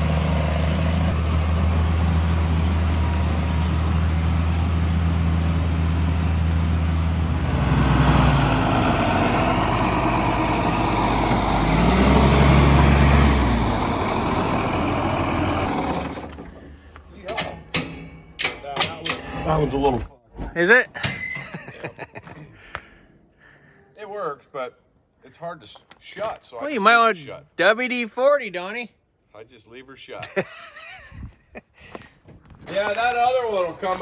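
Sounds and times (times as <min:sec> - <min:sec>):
diesel engine running and revving: 0:00.0 - 0:16.6.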